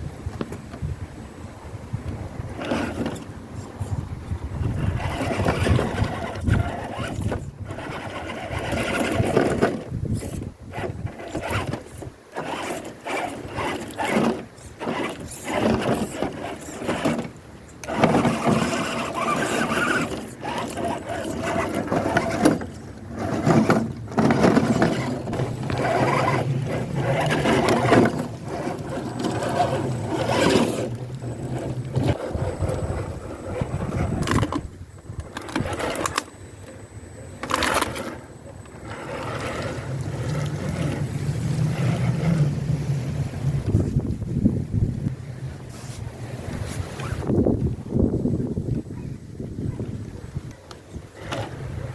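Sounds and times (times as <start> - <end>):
toy car motor whining: 2.6 - 4.0, 4.6 - 36.3, 37.4 - 41.1.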